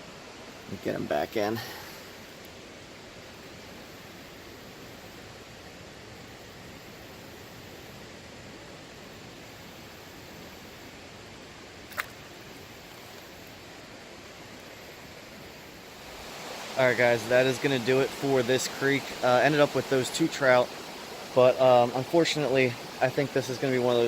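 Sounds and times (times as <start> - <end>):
flowing creek water: 0.0 - 24.0
sharp click: 11.9 - 12.2.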